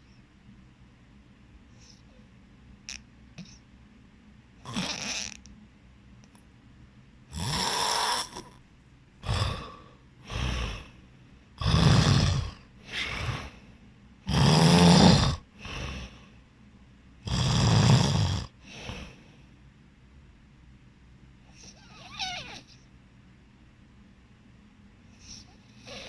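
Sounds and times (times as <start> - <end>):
person snoring: 4.7 - 5.4, 7.3 - 8.6, 9.2 - 11.0, 11.6 - 13.6, 14.3 - 16.2, 17.2 - 19.2, 25.2 - 26.0.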